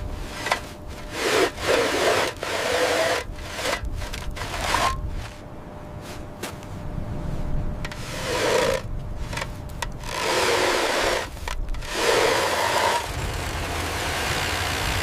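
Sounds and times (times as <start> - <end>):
long rasping scraping strokes: 0.0 - 5.4, 7.8 - 15.0
light scraping and rustling: 0.2 - 1.8.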